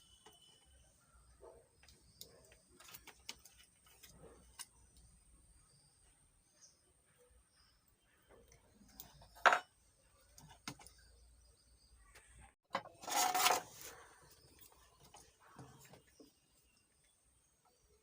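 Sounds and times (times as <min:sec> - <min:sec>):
rustling scrape: 0:12.9 - 0:14.1.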